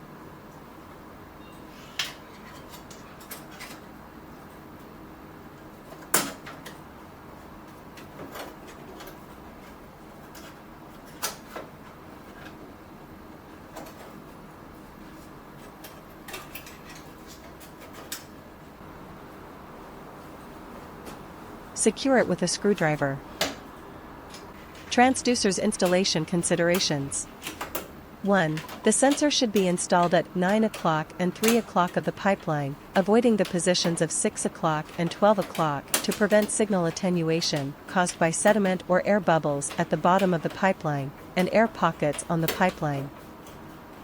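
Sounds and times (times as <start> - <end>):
steady background noise: 0.0 - 44.0.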